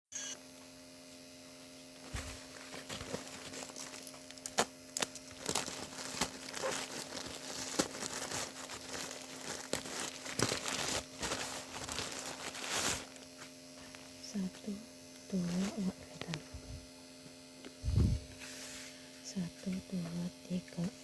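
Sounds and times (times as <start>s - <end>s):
low electrical hum: 0.2s - 21.0s
packaging crinkling and tearing: 2.0s - 14.1s.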